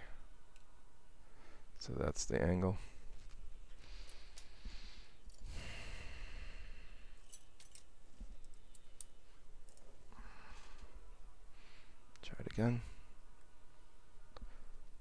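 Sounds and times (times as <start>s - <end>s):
breathy exhale: 3.8s - 7.2s, 10.1s - 12.0s
metal dental instruments clicking: 7.2s - 9.8s.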